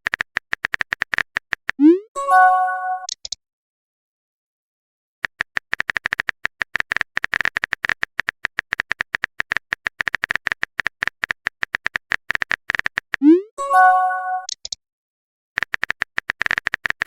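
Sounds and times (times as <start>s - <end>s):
phone keyboard taps: 0.1s - 1.8s, 15.6s - 17.0s.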